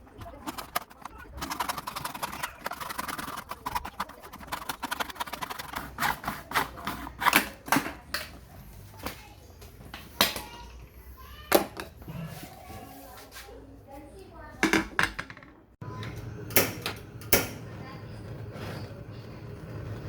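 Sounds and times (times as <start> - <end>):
hard objects knocking: 0.0 - 8.3, 14.6 - 15.6.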